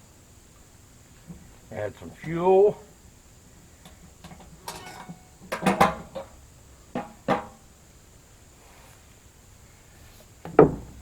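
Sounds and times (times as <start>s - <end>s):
plastic gas can clunking: 4.2s - 6.4s, 7.0s - 7.6s, 10.5s - 11.0s.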